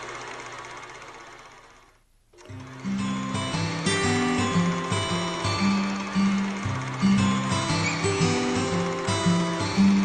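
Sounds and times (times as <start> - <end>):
plucked guitar melody: 2.4 - 10.0.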